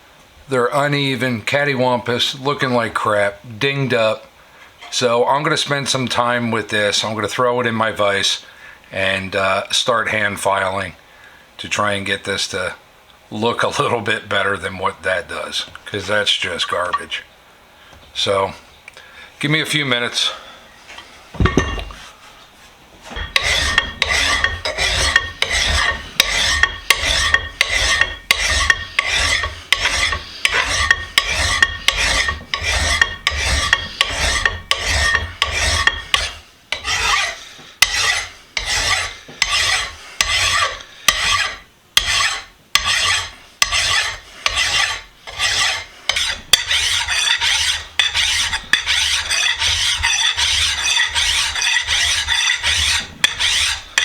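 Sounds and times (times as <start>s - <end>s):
hand file rasping on metal: 23.2s - 54.0s.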